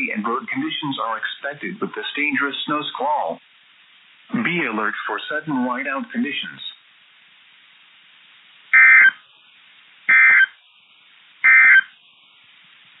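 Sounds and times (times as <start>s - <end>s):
high data tone bursts: 8.7s - 9.3s, 10.1s - 10.7s, 11.4s - 12.3s.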